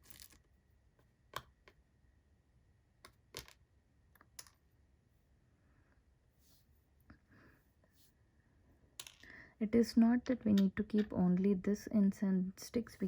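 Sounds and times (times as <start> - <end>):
small objects clicking and tapping: 0.0 - 0.5, 1.3 - 1.8, 3.0 - 4.7, 9.0 - 9.4.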